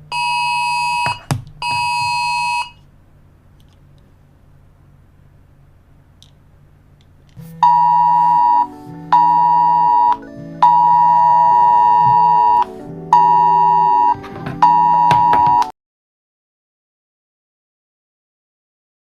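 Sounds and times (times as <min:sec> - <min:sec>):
faint low hum: 0:00.0 - 0:15.7
electronic keyboard chords: 0:07.4 - 0:15.7.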